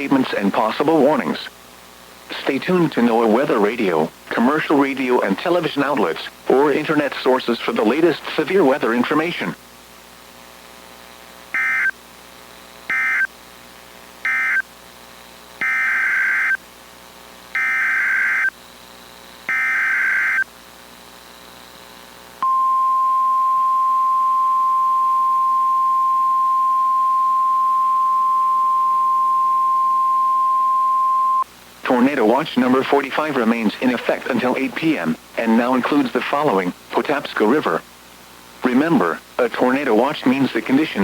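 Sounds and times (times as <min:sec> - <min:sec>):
steady warning alarm tone: 0:11.6 - 0:11.9, 0:12.9 - 0:13.3, 0:14.2 - 0:14.6, 0:15.6 - 0:16.6, 0:17.6 - 0:18.5, 0:19.5 - 0:20.5, 0:22.4 - 0:31.4.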